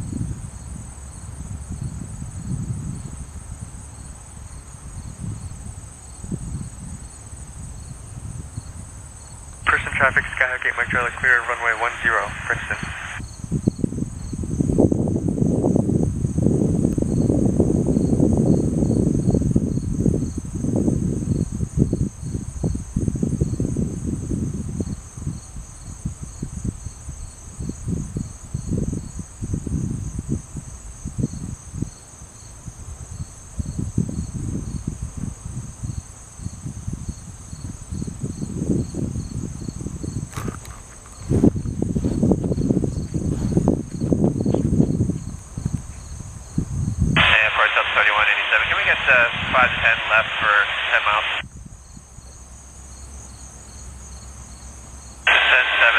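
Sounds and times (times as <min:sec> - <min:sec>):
insects trilling: 0:17.1 - 0:35.2, 0:35.9 - 0:48.3, 0:50.5 - 0:55.7.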